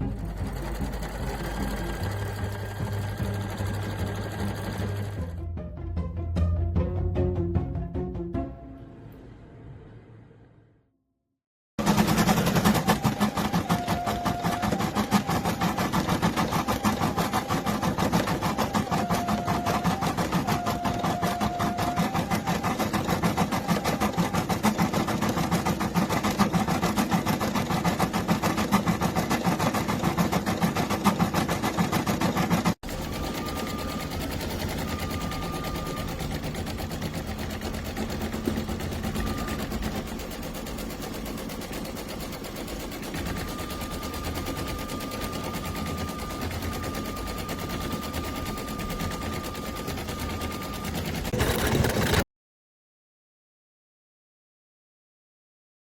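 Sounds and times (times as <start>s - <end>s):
embroidery machine needle rattle: 11.8s - 52.2s.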